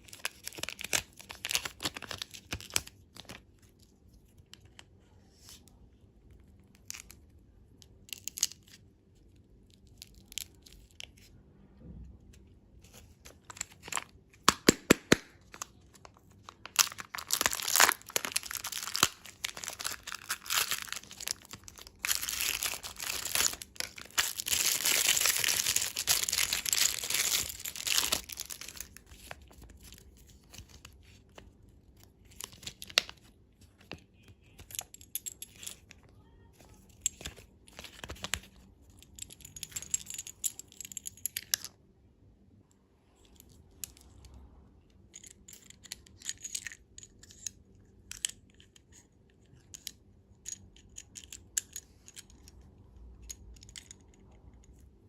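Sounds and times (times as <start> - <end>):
candy wrapper crinkling: 0.0 - 3.7, 12.9 - 36.0, 36.6 - 41.6.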